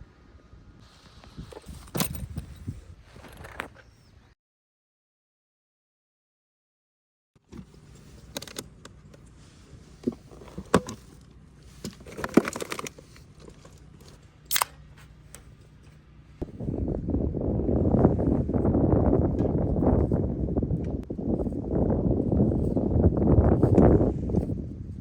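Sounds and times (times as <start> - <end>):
low steady hum: 7.4 - 25.0
small objects clicking and rustling: 10.6 - 15.4.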